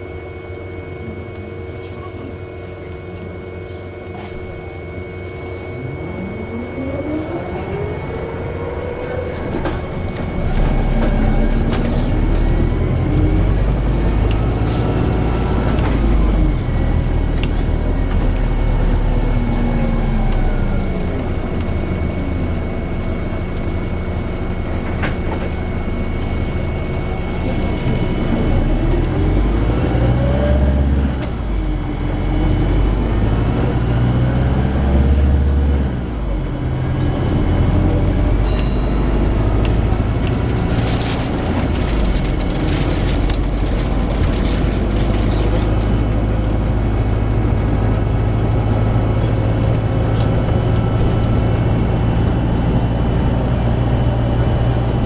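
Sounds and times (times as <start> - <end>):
bus engine rumble: 0.0 - 55.0
bus motor whine: 0.0 - 55.0
steady high tone: 3.4 - 29.8, 36.0 - 42.4.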